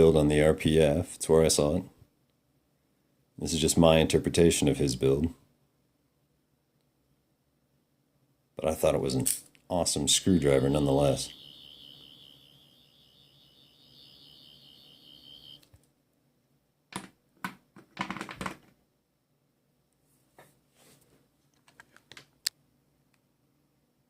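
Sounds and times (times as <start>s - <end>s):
high wavering electronic tone: 10.0s - 15.7s.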